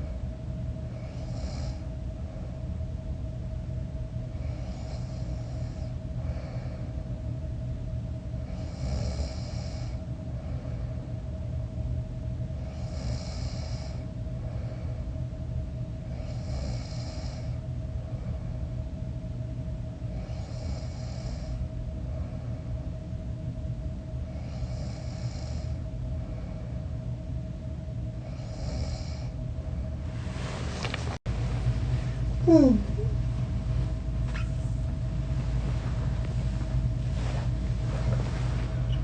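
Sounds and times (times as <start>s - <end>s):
steady low hum: 0.0s - 39.0s
man snoring: 1.0s - 1.8s, 4.4s - 6.5s, 8.5s - 10.0s, 12.6s - 14.0s, 16.1s - 17.6s, 20.2s - 21.6s, 24.4s - 25.8s, 28.2s - 29.4s.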